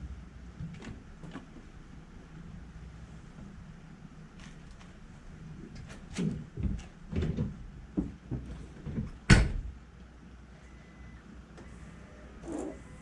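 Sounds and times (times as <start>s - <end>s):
knocks and clunks: 6.1s - 9.7s.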